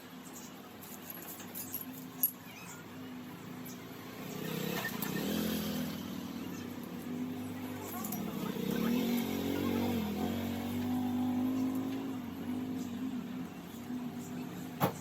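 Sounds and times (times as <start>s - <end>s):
vehicle engine running: 3.3s - 14.8s.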